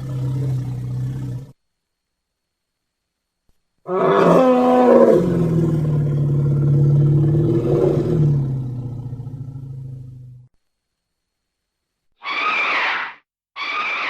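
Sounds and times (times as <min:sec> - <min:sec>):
elephant bellowing roar: 0:00.0 - 0:01.6, 0:03.9 - 0:10.3.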